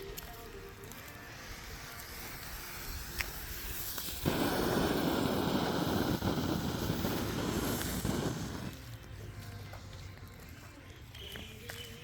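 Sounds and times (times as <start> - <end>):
smoke bomb hissing: 1.3 - 8.8.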